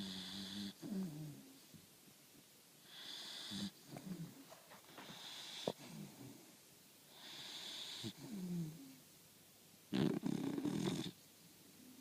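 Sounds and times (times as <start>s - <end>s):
puppy snoring: 0.0s - 1.6s, 2.8s - 6.4s, 7.1s - 9.0s, 9.9s - 11.2s.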